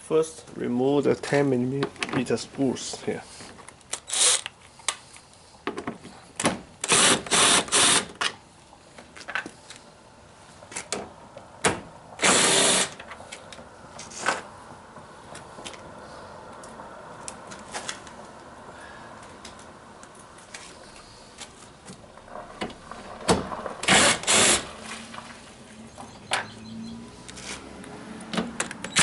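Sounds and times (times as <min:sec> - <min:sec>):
power drill spinning out screws: 0:03.9 - 0:04.5, 0:06.8 - 0:08.1, 0:12.2 - 0:13.0, 0:23.8 - 0:24.7.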